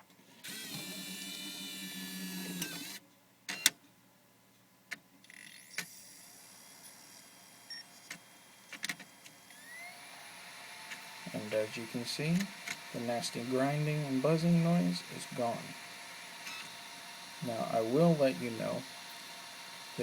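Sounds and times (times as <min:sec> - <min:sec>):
disc drive motor whining: 0:00.4 - 0:03.7, 0:05.3 - 0:20.0
disc drive click: 0:16.4 - 0:16.8.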